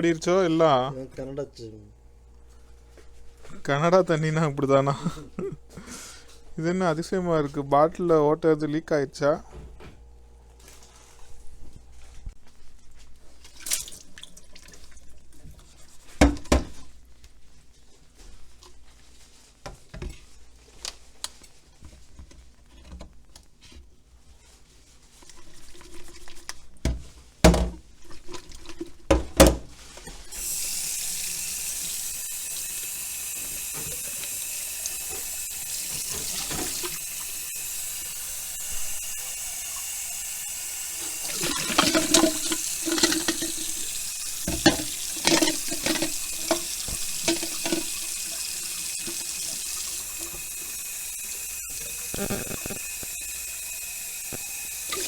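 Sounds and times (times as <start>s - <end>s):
water tap running: 30.2s - 55.0s
knocks and clatter of ice in bottle: 41.4s - 48.0s.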